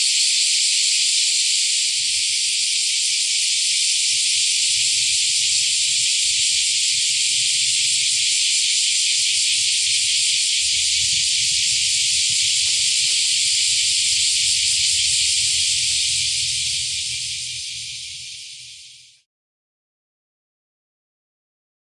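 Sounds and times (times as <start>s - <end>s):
cicadas singing: 0.0s - 19.2s.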